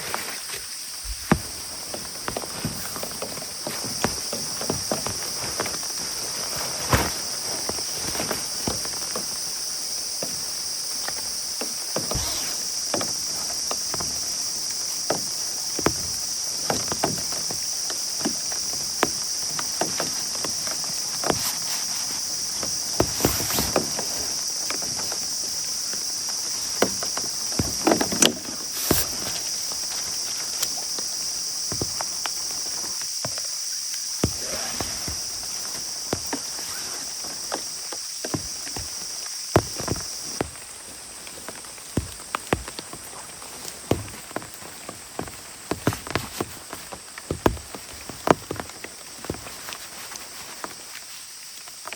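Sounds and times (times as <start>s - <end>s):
steady high-pitched hiss: 0.0s - 51.9s.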